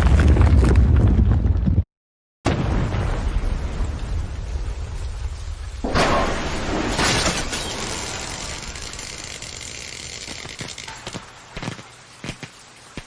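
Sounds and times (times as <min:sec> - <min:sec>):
loud crash: 0:05.8 - 0:08.8.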